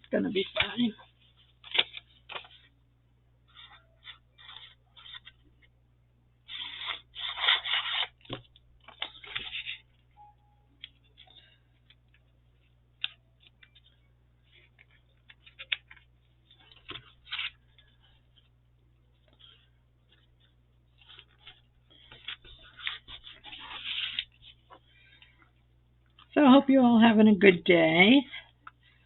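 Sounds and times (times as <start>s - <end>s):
paper rustling and scraping: 0.3s - 2.8s, 3.4s - 5.7s, 6.4s - 10.2s, 10.8s - 25.3s.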